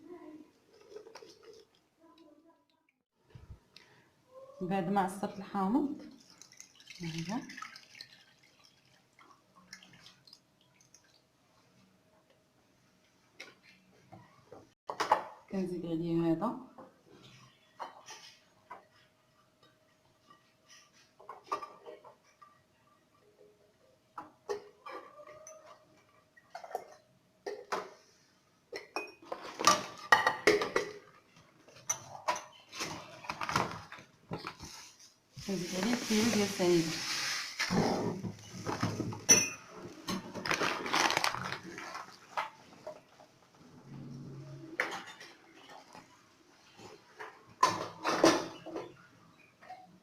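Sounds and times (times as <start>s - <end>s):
dishes and utensils clattering: 17.1s - 34.8s, 37.6s - 43.3s, 44.6s - 50.0s.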